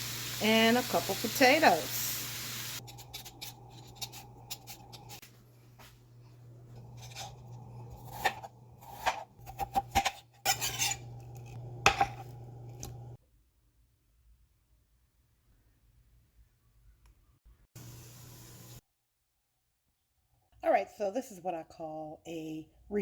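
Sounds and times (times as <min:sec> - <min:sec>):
utensils scraping cookware: 0:02.8 - 0:05.2, 0:06.7 - 0:13.1
steady low hum: 0:02.8 - 0:09.6.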